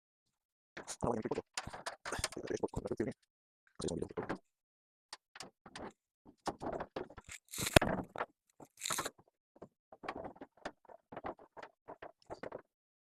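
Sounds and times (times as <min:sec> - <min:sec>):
hands scraping and rustling objects: 0:06.6 - 0:09.2.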